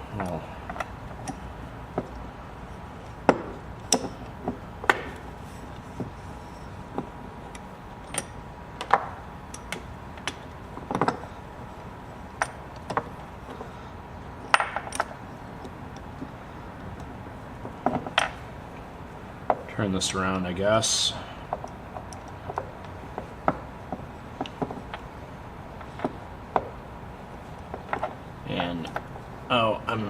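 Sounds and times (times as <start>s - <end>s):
metal tools clicking and clinking: 7.5s - 8.4s, 14.4s - 15.2s.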